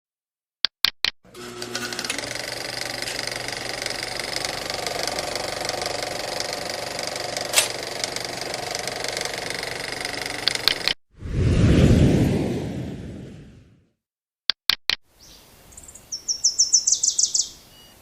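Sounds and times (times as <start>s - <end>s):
machine rattling steadily: 1.3s - 11.0s
sharp click: 7.5s - 8.2s, 10.3s - 11.0s.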